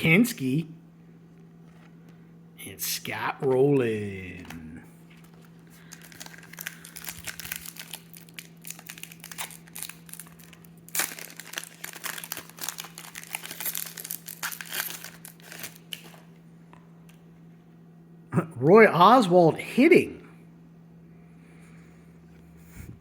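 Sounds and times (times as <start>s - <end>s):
foil wrapper crinkling and tearing: 5.1s - 16.3s.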